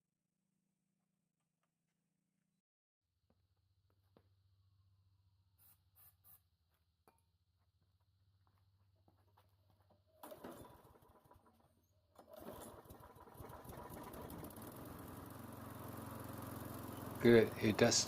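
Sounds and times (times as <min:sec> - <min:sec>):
lawn mower engine starting: 0:10.2 - 0:18.0.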